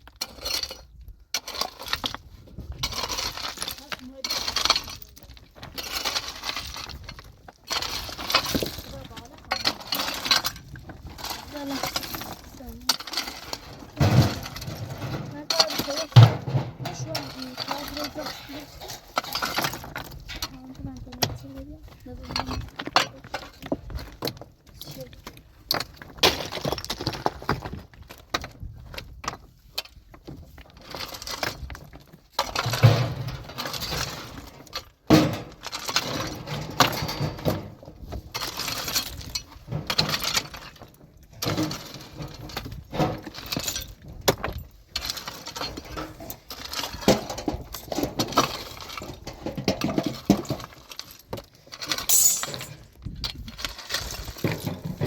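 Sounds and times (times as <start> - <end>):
stones knocking and clattering: 1.4 - 16.4, 22.2 - 32.9, 38.1 - 55.0.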